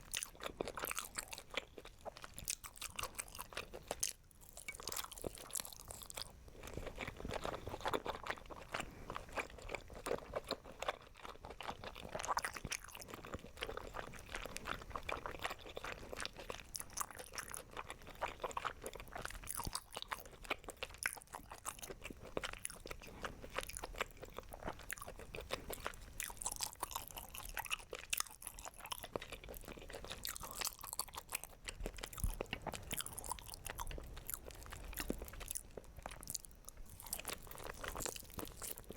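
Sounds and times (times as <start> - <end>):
chewing crunchy food: 0.0 - 38.9.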